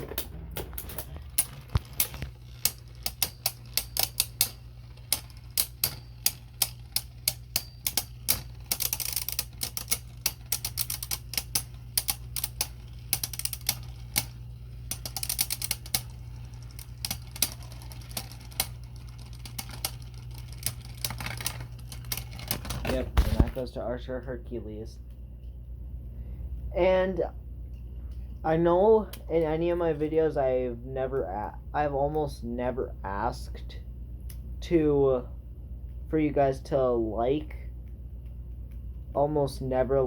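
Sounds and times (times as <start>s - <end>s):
spinning tops clacking: 0.0s - 22.8s.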